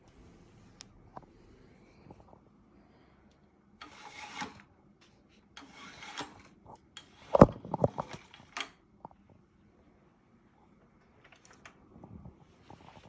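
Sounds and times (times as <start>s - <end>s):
rubbing or scraping: 3.8s - 8.4s.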